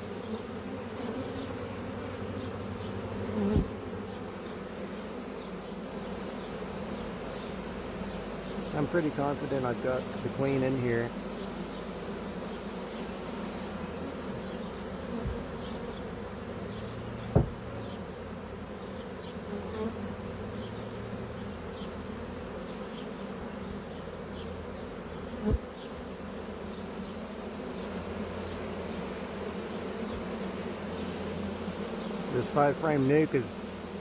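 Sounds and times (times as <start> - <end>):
bee swarm buzzing: 0.0 - 34.0
sharp knocks on a box: 17.3 - 17.7.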